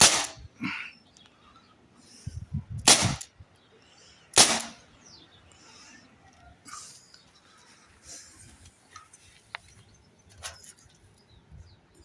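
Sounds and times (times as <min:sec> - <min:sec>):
air pistol shots: 0:00.0 - 0:00.5, 0:02.8 - 0:03.3, 0:04.4 - 0:04.8.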